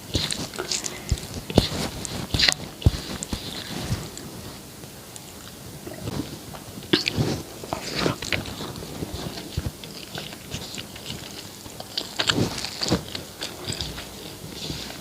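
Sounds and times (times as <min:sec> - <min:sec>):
wet chewing mouth sounds: 0:00.0 - 0:04.4, 0:05.2 - 0:15.0.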